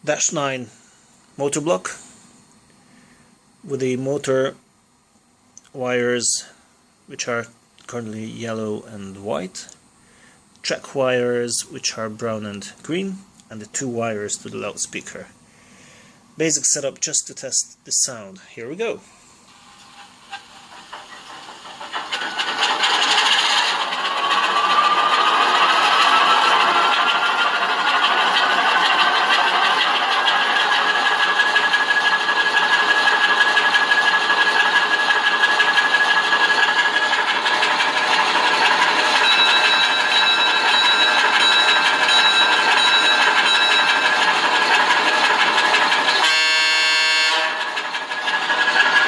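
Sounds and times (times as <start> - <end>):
diesel locomotive engine revving: 19.5 - 49.0
locomotive horn blast: 46.2 - 47.7.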